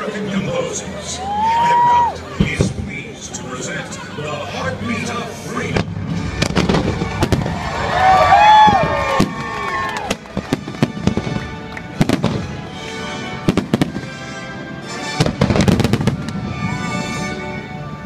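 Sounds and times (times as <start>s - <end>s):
fireworks bangs and crackles: 2.4s - 3.4s, 5.5s - 12.7s, 13.4s - 14.2s, 15.2s - 17.4s
music with held notes: 10.0s - 18.0s.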